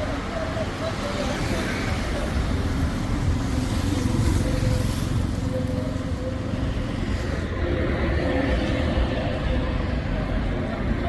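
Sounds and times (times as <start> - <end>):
street traffic rumble: 0.0 - 11.0.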